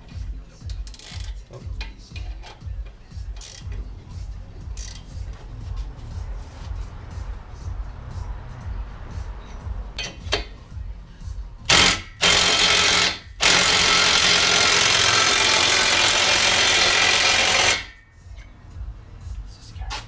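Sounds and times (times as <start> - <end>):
impact wrench bursts: 0.8 - 1.4, 3.4 - 3.8, 11.7 - 18.0.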